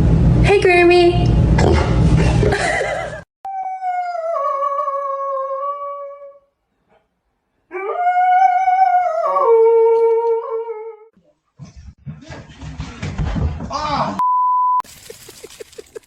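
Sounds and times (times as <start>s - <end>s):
dog howling: 3.5s - 6.4s, 7.7s - 11.1s.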